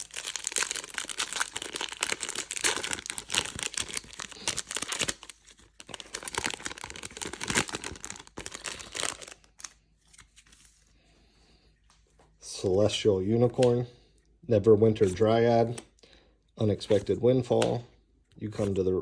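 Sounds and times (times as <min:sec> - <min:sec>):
foil wrapper crinkling and tearing: 0:00.0 - 0:10.4.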